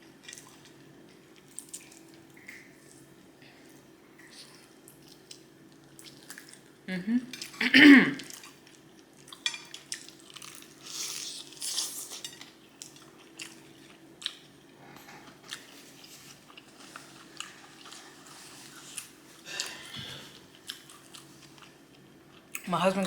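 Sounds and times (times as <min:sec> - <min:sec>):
chewing and crunching: 0:00.0 - 0:07.6, 0:08.2 - 0:22.7.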